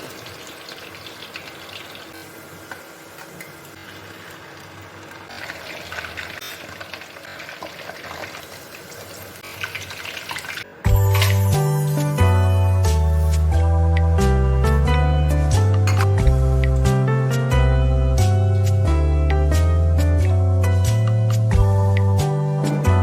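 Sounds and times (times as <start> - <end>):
tap water running into sink: 0.0 - 10.7
background music: 10.8 - 23.0.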